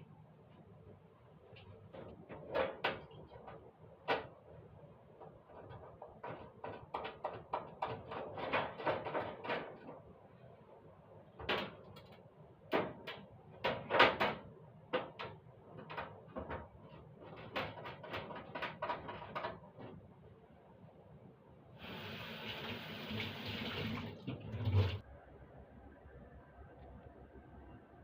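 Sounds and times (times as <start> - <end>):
household objects knocking and rattling: 1.6 - 4.6, 5.2 - 10.1, 11.4 - 20.0.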